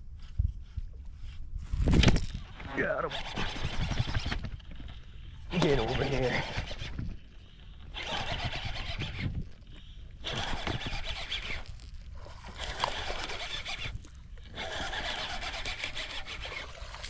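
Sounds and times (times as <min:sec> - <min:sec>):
fishing reel being wound: 0:02.8 - 0:17.0.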